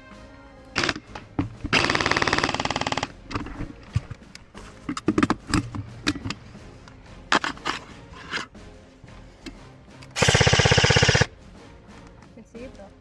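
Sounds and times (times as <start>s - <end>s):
airsoft rifle full-auto burst: 0.8s - 1.0s, 1.7s - 3.2s, 10.2s - 11.3s
single shot clicks: 10.1s - 11.1s.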